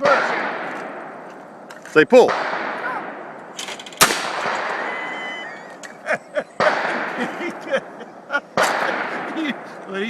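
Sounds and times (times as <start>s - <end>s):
shotgun shot echo: 0.0s - 1.2s, 2.2s - 3.4s, 4.0s - 5.2s, 6.6s - 7.6s, 8.6s - 9.8s
loud sharp bang: 2.1s - 5.1s, 6.6s - 7.7s, 8.5s - 9.8s.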